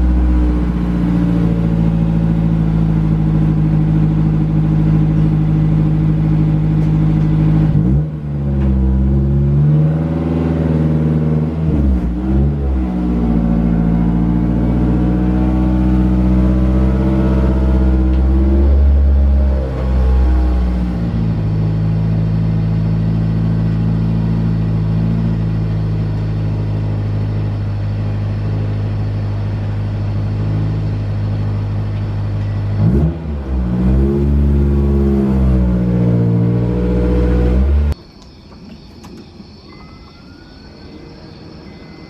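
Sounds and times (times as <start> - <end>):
car engine idling and revving: 0.0 - 38.0.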